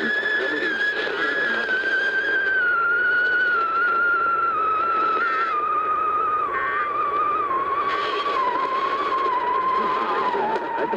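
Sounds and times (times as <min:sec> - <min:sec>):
whistling interference tone: 0:00.0 - 0:10.9.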